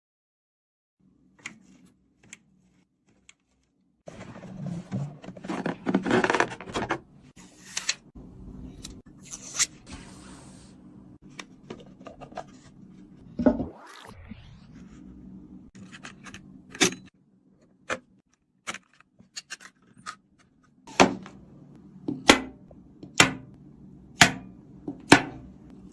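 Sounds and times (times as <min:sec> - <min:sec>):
hands scraping and rubbing parts: 0:01.3 - 0:08.1, 0:11.2 - 0:13.2, 0:15.8 - 0:21.4.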